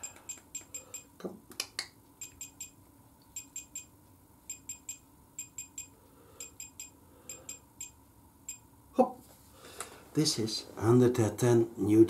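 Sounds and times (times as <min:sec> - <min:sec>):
torque wrench short high beeps: 0:02.2 - 0:02.8, 0:03.4 - 0:03.9, 0:04.5 - 0:08.6.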